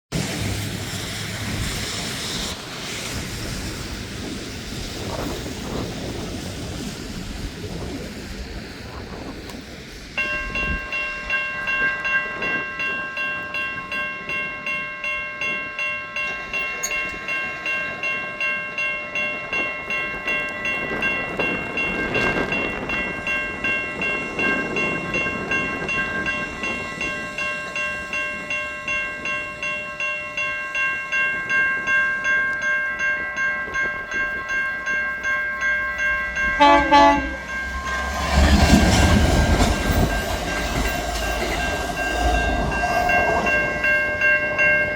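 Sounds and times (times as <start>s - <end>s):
approaching train noise: 0.1s - 44.9s
railroad crossing bells ringing: 8.4s - 44.9s
locomotive horn blast: 36.0s - 38.3s.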